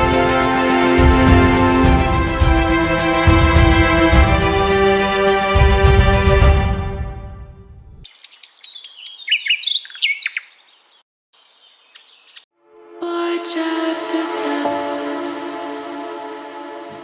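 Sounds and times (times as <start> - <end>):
background music: 0.0 - 8.0, 12.6 - 17.0
bird chirping: 7.7 - 12.5.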